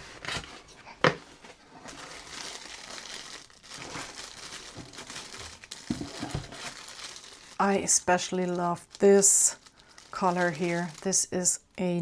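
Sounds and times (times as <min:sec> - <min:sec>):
packaging crinkling: 0:00.0 - 0:12.0.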